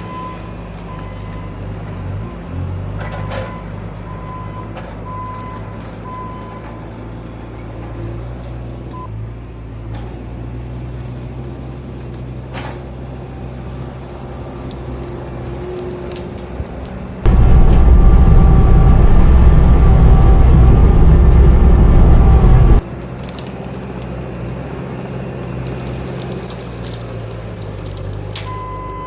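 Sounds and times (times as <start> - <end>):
loader diesel engine running: 0.0 - 29.0
sharp cracks: 3.4 - 19.9, 22.4 - 29.0.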